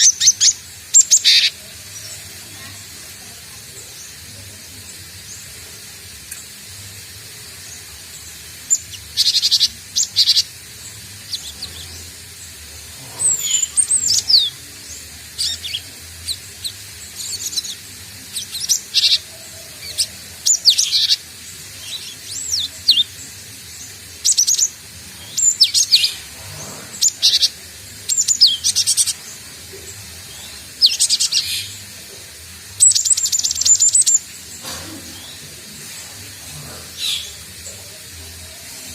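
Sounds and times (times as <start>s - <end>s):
bird chirping and whistling: 13.2s - 14.6s, 19.9s - 21.2s.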